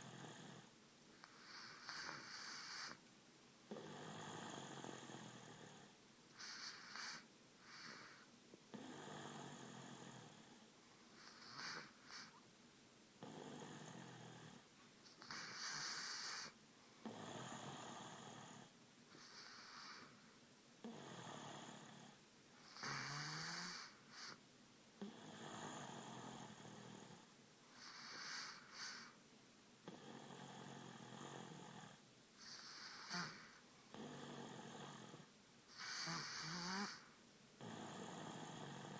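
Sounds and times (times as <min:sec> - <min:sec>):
person snoring: 0:32.6 - 0:38.9.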